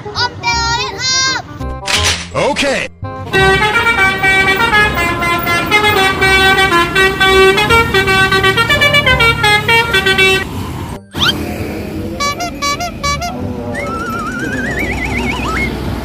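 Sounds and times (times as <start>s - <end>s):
bus air horn playing a tune: 3.3s - 10.6s, 12.1s - 13.5s.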